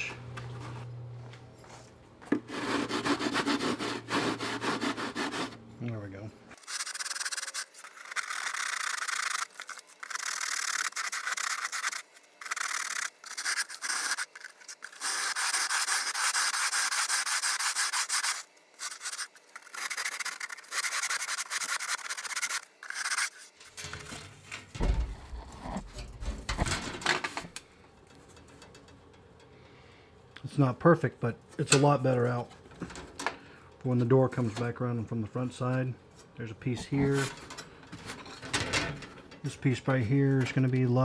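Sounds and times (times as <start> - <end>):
dry scratchy rasping scraping: 2.5 - 5.6, 6.6 - 27.5, 36.8 - 38.4
knocks and handling bumps: 23.7 - 27.6.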